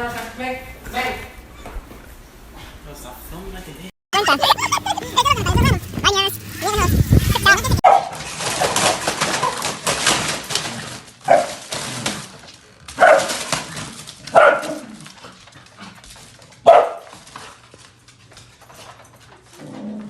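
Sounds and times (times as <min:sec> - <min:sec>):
dog barking: 0:07.8 - 0:08.2, 0:11.3 - 0:11.6, 0:13.0 - 0:13.4, 0:14.3 - 0:14.8, 0:16.6 - 0:17.1.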